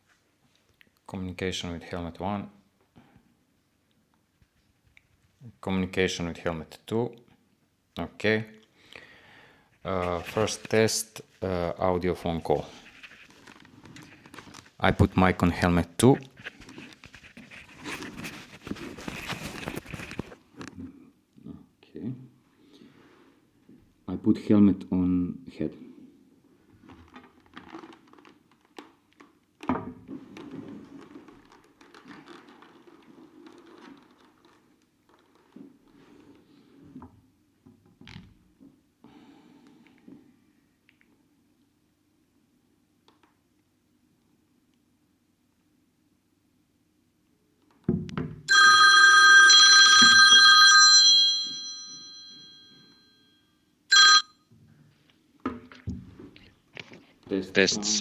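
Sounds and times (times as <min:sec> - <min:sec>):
rubbing against helmet shell: 0:16.3 - 0:20.4
phone ringing through helmet speaker: 0:48.5 - 0:53.1, 0:53.9 - 0:54.4.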